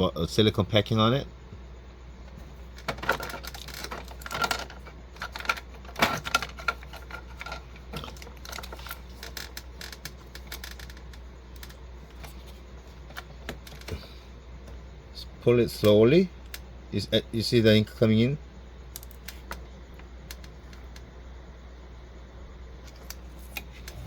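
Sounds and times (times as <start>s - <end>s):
steady low hum: 0.0s - 24.0s
plastic parts clicking: 2.7s - 12.5s, 18.9s - 21.0s.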